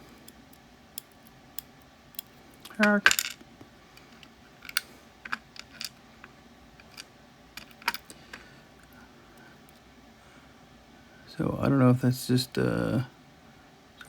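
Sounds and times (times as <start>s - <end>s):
small metal parts clicking: 0.2s - 3.4s, 4.0s - 6.0s, 6.8s - 8.4s.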